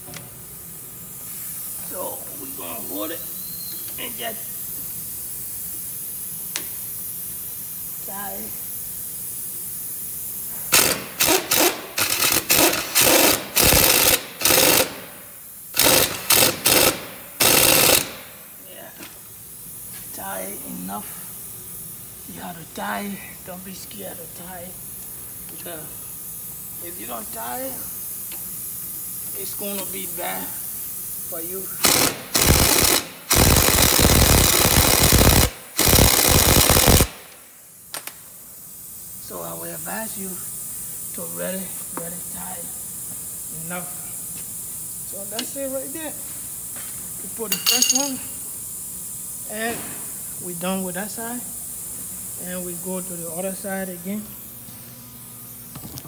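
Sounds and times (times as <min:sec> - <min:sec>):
impact wrench hammering: 0:10.7 - 0:15.1, 0:15.7 - 0:18.3, 0:31.8 - 0:37.1, 0:47.5 - 0:48.3.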